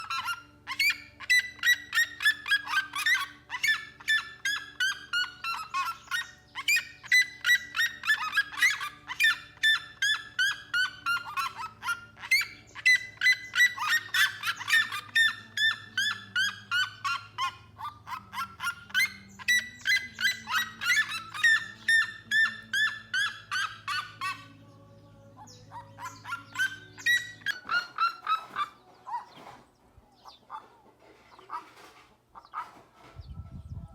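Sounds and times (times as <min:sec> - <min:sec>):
bird honking harshly: 0:00.0 - 0:24.6.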